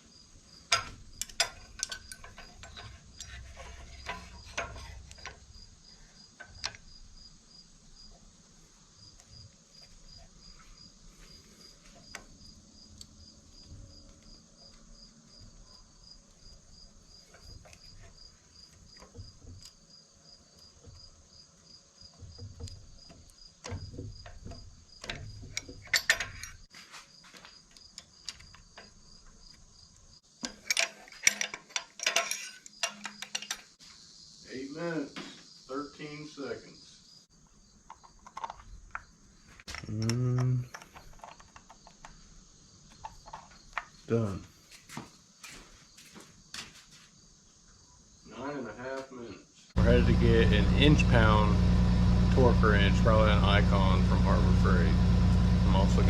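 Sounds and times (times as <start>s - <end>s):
cricket chirping: 0.0s - 54.0s
metallic clicks of hand tools: 0.7s - 5.4s, 30.4s - 33.7s.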